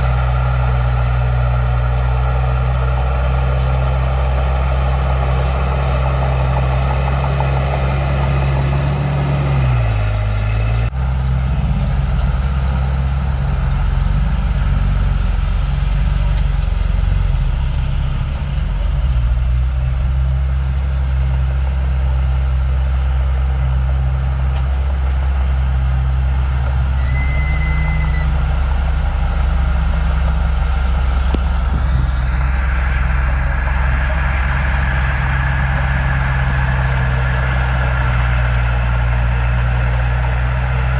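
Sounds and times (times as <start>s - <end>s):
diesel construction machinery running: 0.0s - 40.9s
short high beep: 27.0s - 28.4s.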